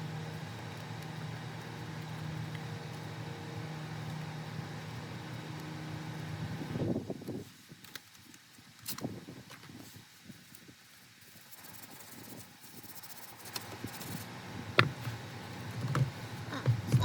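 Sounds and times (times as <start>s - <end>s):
motor-driven machine humming: 0.0s - 7.0s, 13.6s - 17.0s.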